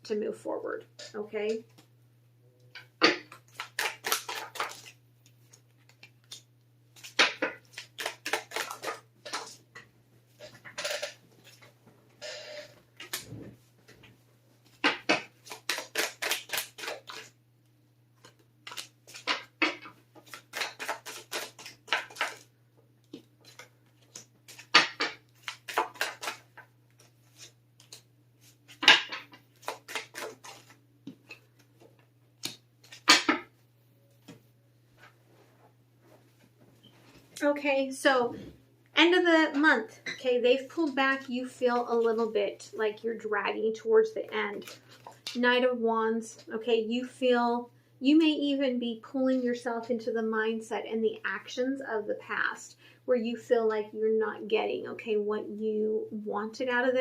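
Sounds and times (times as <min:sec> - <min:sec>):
cards shuffling: 0:03.0 - 0:09.6, 0:12.4 - 0:13.4, 0:14.6 - 0:17.4, 0:18.2 - 0:22.5, 0:23.1 - 0:33.4.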